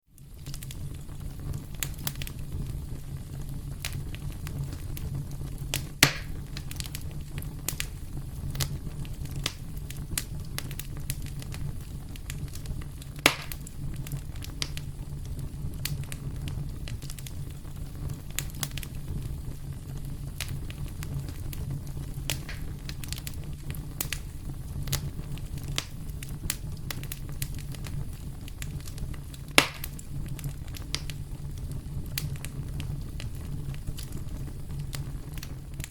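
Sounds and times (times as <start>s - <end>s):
campfire crackling: 0.1s - 35.9s
fire sharp pops: 0.2s - 35.9s
steady low rumble: 0.7s - 35.9s.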